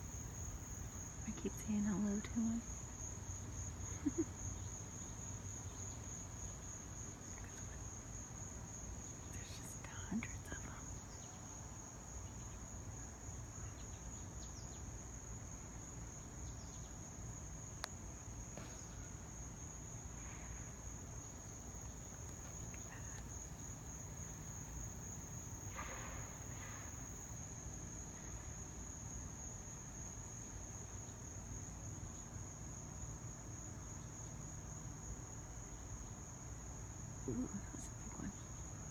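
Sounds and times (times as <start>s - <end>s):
insects trilling: 0.0s - 38.9s.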